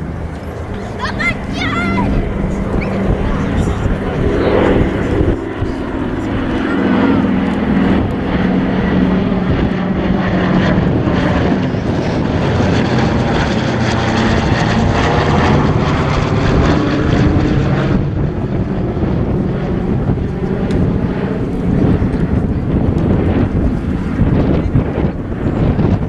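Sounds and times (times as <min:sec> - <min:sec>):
propeller plane flying by: 0:00.0 - 0:26.0.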